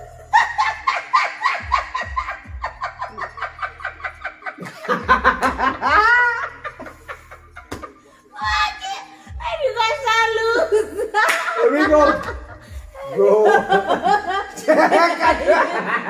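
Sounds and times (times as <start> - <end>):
person laughing: 0.0 - 8.5, 10.6 - 16.0.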